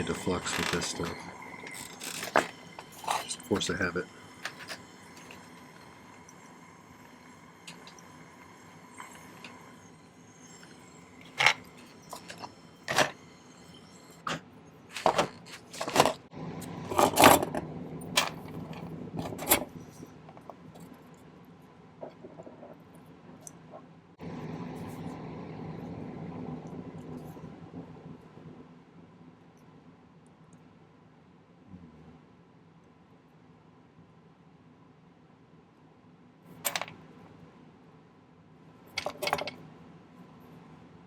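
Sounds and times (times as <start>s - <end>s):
steady hiss: 0.0s - 16.2s.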